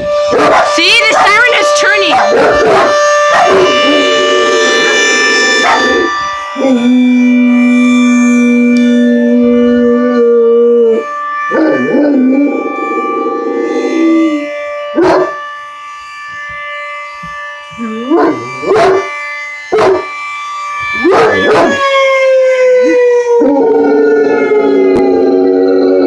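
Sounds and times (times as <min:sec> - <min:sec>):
tornado warning siren: 0:00.0 - 0:26.0
dog howling: 0:00.3 - 0:15.4, 0:17.8 - 0:20.1, 0:21.0 - 0:26.0
dog barking and yelping: 0:00.4 - 0:03.7, 0:18.2 - 0:19.0, 0:21.1 - 0:21.7.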